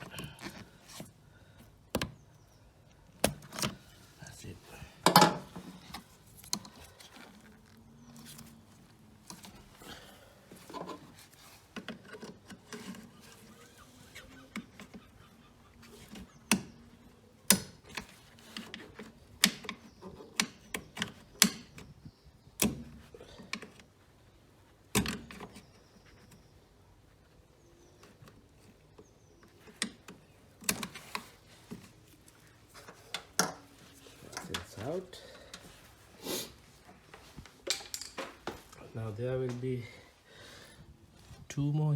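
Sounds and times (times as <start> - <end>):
hand tools and parts clicking: 10.6 - 21.9, 37.6 - 38.8.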